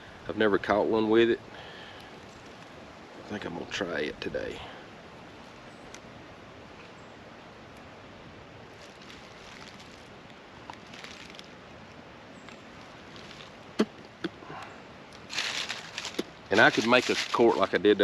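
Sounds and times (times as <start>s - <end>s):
creek running: 4.6s - 18.0s
handling rustles: 8.7s - 11.6s, 12.4s - 13.8s, 14.6s - 18.0s.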